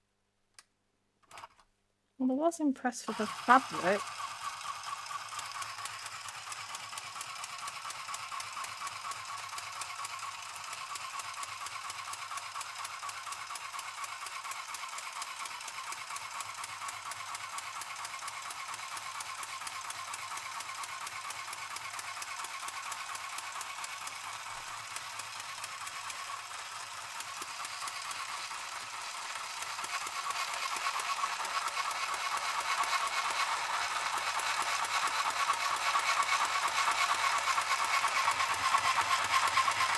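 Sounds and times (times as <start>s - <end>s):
sewing machine rattling: 1.2s - 1.6s, 3.1s - 39.9s.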